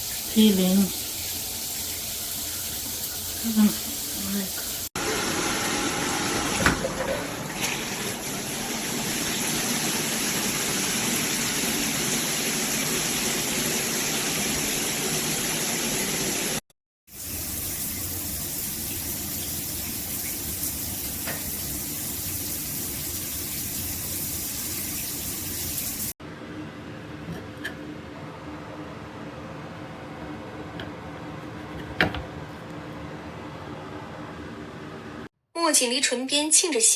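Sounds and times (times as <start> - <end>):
shower water spraying: 0.0 - 6.6, 7.4 - 26.2.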